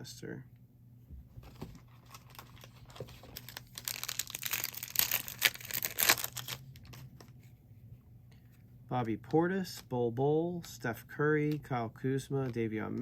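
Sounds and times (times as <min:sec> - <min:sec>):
foil pack tearing and crinkling: 0:01.9 - 0:06.9.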